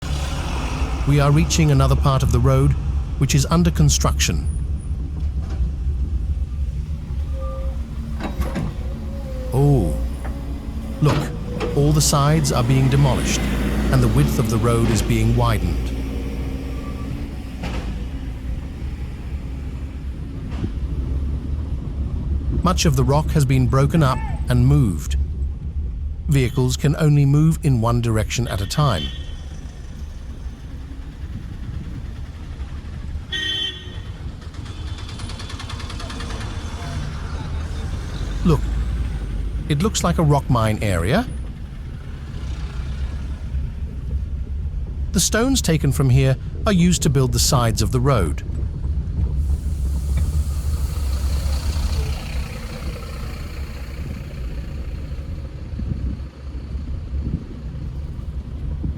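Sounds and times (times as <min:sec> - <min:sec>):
vehicle rumbling on rough road: 0:00.0 - 0:58.9
horn toot: 0:28.6 - 0:29.5.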